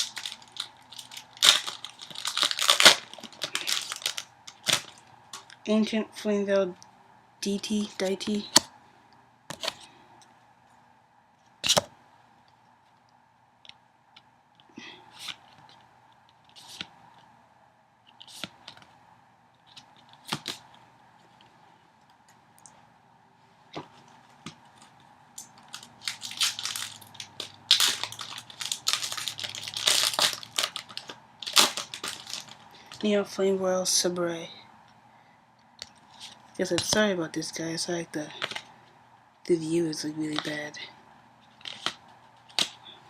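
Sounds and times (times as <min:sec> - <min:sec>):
foil wrapper crinkling: 0:00.0 - 0:05.6, 0:25.6 - 0:33.0, 0:41.5 - 0:42.8
cards snapping and sliding: 0:18.2 - 0:18.9, 0:19.7 - 0:20.7, 0:41.6 - 0:42.8.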